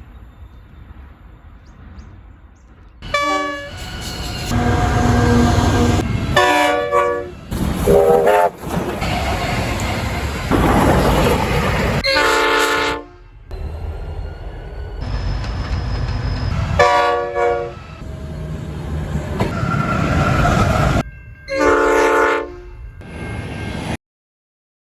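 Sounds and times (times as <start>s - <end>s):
freight train rumble and rail noise: 0.0s - 24.0s
locomotive horn blasts: 3.0s - 8.6s, 12.0s - 13.4s, 16.6s - 18.5s, 21.5s - 22.9s.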